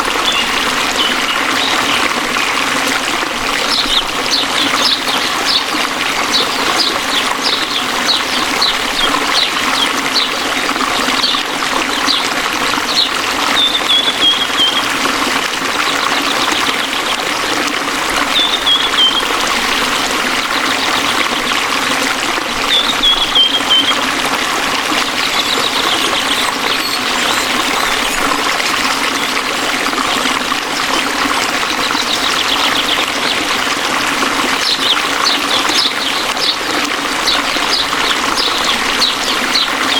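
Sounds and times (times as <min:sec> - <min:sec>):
birds chirping and trilling: 0:00.0 - 0:02.1, 0:03.6 - 0:15.0, 0:18.2 - 0:19.8, 0:22.6 - 0:29.4, 0:31.8 - 0:33.5, 0:34.6 - 0:39.9
waterfall rushing: 0:00.0 - 0:39.9.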